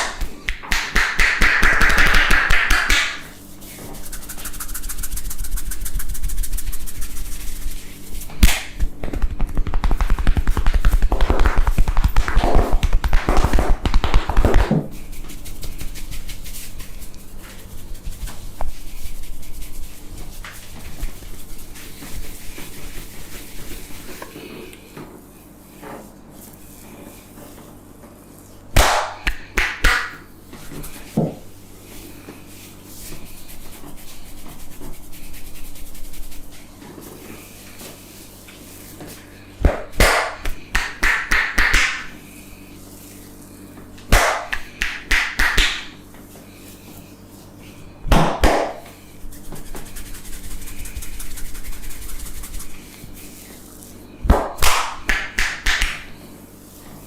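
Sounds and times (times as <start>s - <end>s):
hands slapping a head: 0.0s - 3.3s, 8.4s - 16.8s, 28.8s - 30.2s, 39.6s - 42.1s, 44.0s - 45.9s, 48.1s - 48.9s, 54.3s - 56.1s
hands rubbing scalp and hair: 0.7s - 24.7s, 29.3s - 39.3s, 40.1s - 47.6s, 48.9s - 54.0s.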